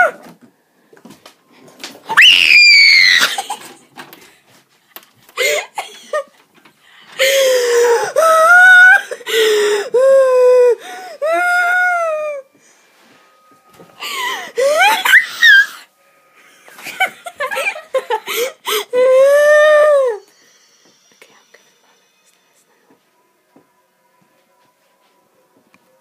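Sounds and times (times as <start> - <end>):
person screaming and wailing: 2.2 - 3.5, 7.8 - 12.4, 14.6 - 15.8.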